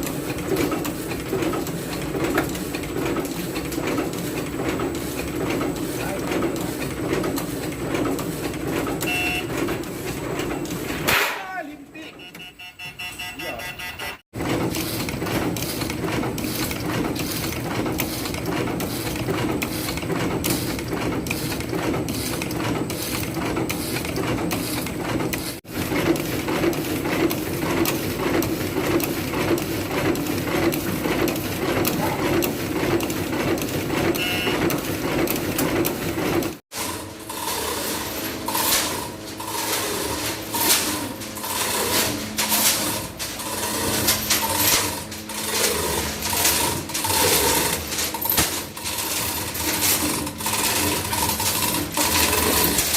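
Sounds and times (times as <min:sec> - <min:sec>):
cutting machine clatter: 0:00.0 - 0:52.9.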